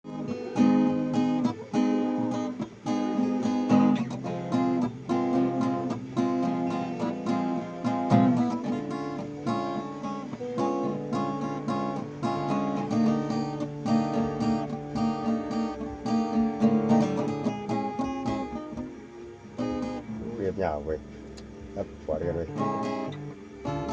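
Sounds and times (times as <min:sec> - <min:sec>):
acoustic guitar strumming chords: 0:00.0 - 0:23.9.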